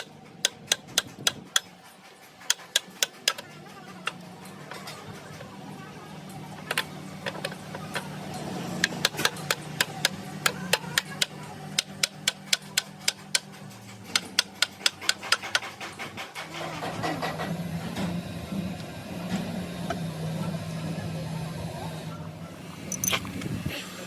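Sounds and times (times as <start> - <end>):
rapid metal taps: 0.0 - 5.3, 8.8 - 16.5.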